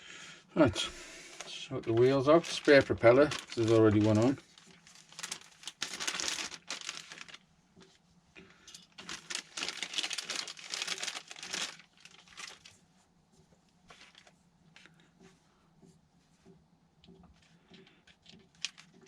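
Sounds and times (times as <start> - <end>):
plastic packaging crinkling: 1.4 - 7.5, 8.8 - 12.8, 13.9 - 14.4, 18.1 - 19.0.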